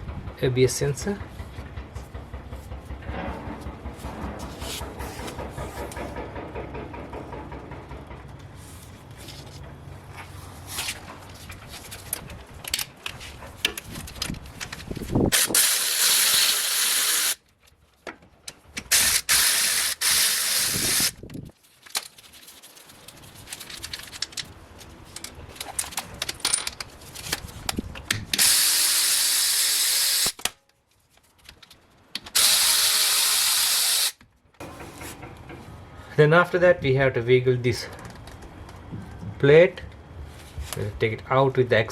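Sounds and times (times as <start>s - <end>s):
tools clicking and knocking: 1.2s - 8.6s, 25.1s - 28.5s, 34.6s - 35.8s
powered wrench running: 15.3s - 17.4s, 18.9s - 21.1s, 28.4s - 30.4s, 32.3s - 34.2s.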